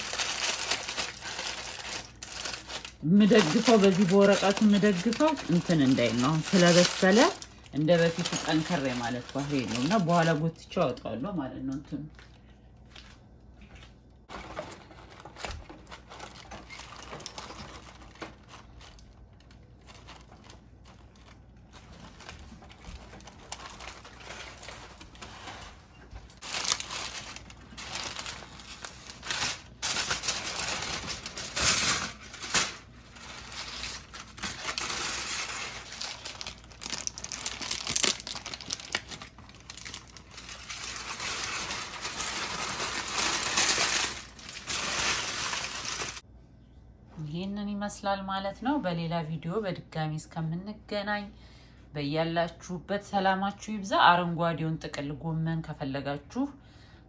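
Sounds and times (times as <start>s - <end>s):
baking paper crinkling: 0.0s - 10.8s, 14.2s - 46.2s.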